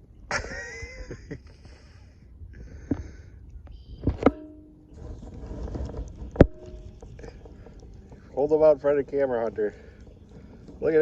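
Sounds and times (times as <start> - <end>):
low wind rumble: 0.0 - 11.0.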